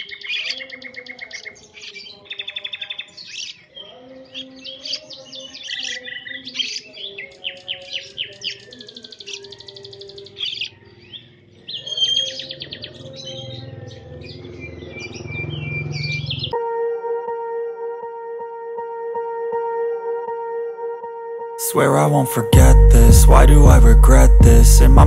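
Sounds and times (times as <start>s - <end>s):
songbird chirping and trilling: 0.0s - 16.6s
low hum: 22.6s - 25.0s.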